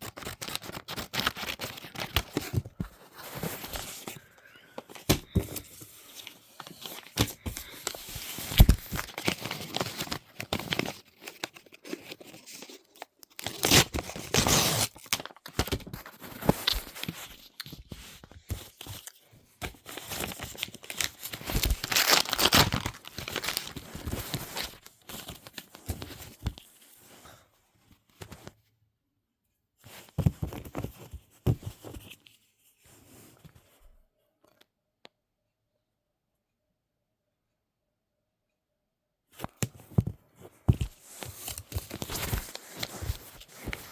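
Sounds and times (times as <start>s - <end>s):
packaging tearing and crinkling: 6.6s - 12.0s, 13.2s - 17.6s, 19.9s - 24.8s.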